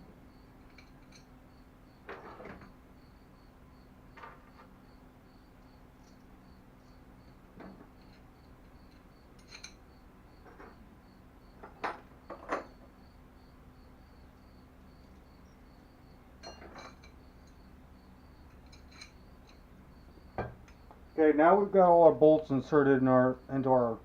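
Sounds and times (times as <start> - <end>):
cricket chirping: 0.0 - 24.0
metal bolts clinking: 16.4 - 17.6, 18.5 - 19.6.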